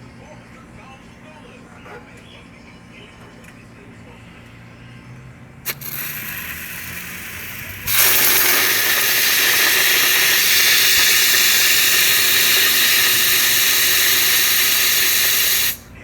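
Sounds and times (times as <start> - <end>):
compressed air hissing: 5.6 - 16.0
valve click: 5.7 - 15.9.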